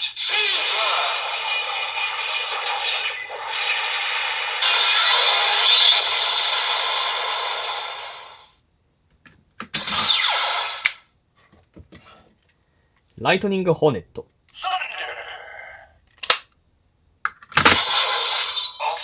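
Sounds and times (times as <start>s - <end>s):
toy electronic sound effect: 0.0s - 7.7s, 17.6s - 19.0s
sharp plastic clicks: 16.1s - 16.6s.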